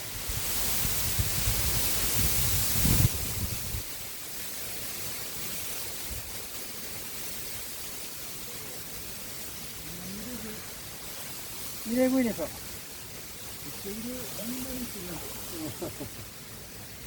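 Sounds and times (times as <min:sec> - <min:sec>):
river water rushing: 0:00.0 - 0:17.0
wind buffeting microphone: 0:00.1 - 0:04.0.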